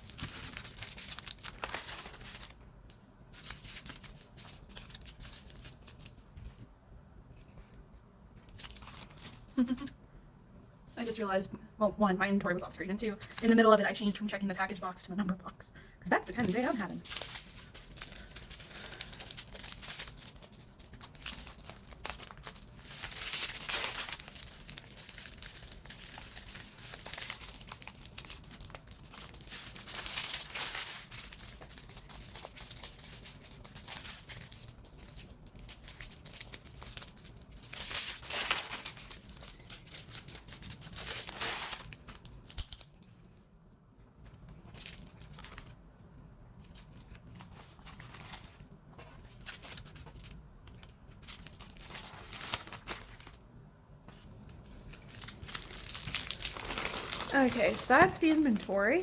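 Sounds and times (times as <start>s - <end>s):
plastic bags crinkling: 0.0s - 2.7s, 8.5s - 9.9s, 16.1s - 43.2s, 44.6s - 45.8s, 46.7s - 53.4s, 54.1s - 59.0s.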